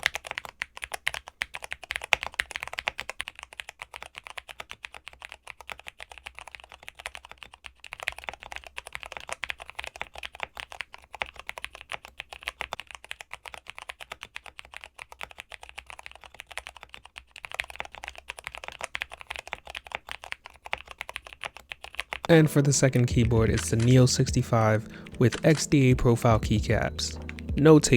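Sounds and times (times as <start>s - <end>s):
mechanical keyboard typing: 0.0s - 27.9s.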